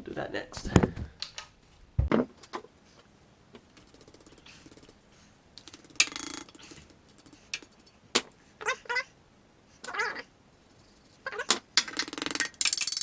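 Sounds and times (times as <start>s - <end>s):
metal clicks and knocks: 5.6s - 8.4s.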